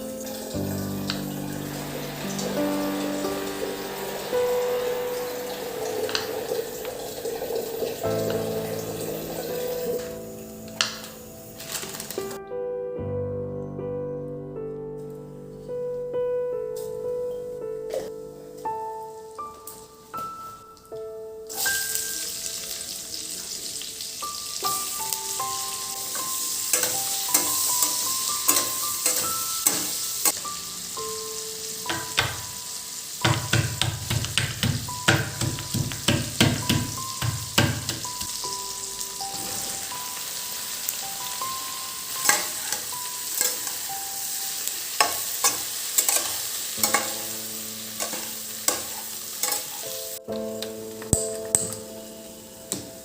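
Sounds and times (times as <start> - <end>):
food sizzling in a pan: 0.0 - 12.4, 18.7 - 53.0.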